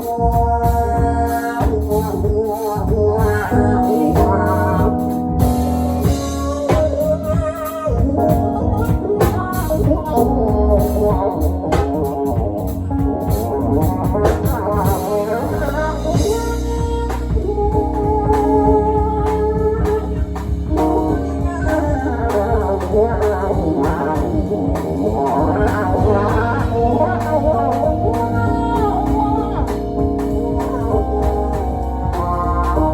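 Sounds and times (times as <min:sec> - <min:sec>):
drums playing steady beat: 0:00.0 - 0:32.9
electric guitar: 0:00.0 - 0:32.9
organ-style keys: 0:00.0 - 0:32.9.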